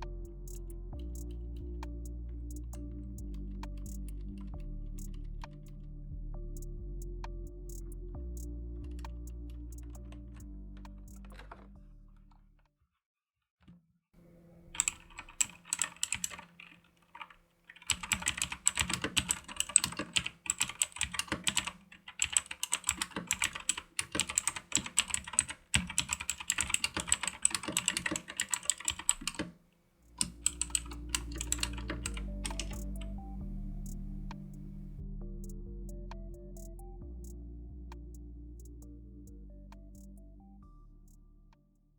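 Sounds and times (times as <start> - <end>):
low background sound: 0.0 - 12.6, 14.2 - 41.9
fast mechanical keyboard typing: 14.7 - 29.6, 30.2 - 33.1.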